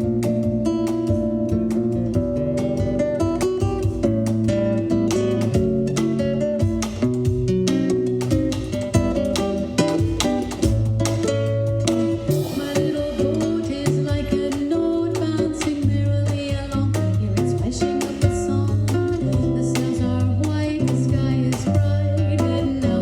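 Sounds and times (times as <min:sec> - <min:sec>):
acoustic guitar melody: 0:00.0 - 0:23.0.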